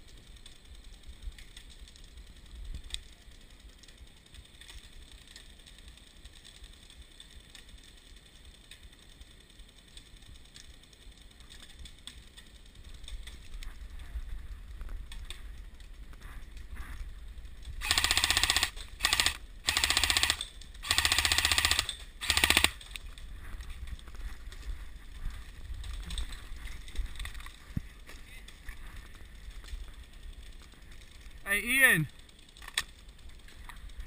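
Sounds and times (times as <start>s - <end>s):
airsoft rifle bursts: 17.8s - 22.9s.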